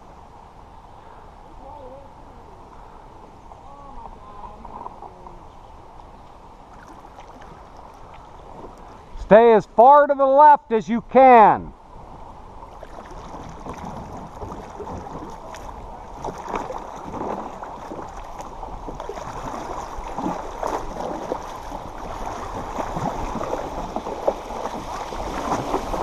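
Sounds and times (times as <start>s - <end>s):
creek water rushing and gurgling: 0.0s - 26.0s
small water splashes: 6.6s - 9.2s, 12.5s - 26.0s.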